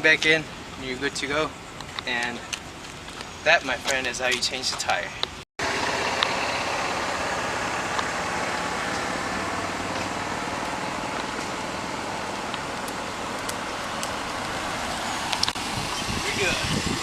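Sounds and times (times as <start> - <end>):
road traffic passing: 0.0 - 17.0.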